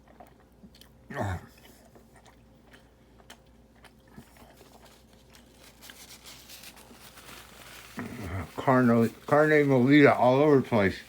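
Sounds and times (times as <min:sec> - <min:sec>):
person chewing food: 0:00.0 - 0:07.0.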